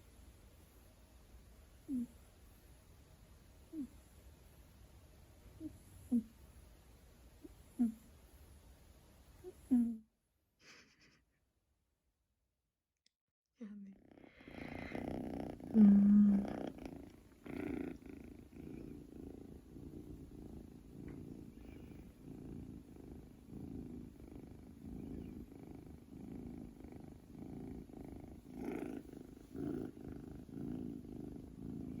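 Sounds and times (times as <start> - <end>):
kitten purring: 1.8 - 2.3, 3.6 - 4.3, 5.5 - 6.4, 7.4 - 8.2, 9.4 - 10.0, 13.6 - 32.0.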